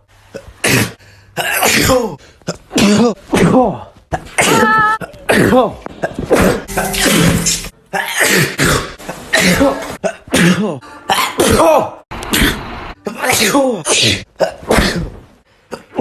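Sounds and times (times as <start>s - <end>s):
person sneezing: 4.2s - 15.2s.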